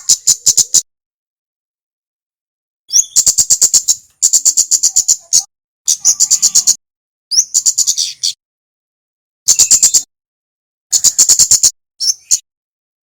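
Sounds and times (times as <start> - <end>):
bird chipping: 0.0 - 0.9, 2.9 - 8.4, 9.5 - 10.1, 10.9 - 12.4.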